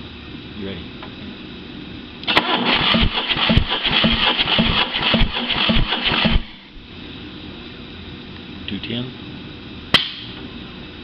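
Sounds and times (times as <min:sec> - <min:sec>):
engine cranking with starter motor: 0:02.3 - 0:06.6.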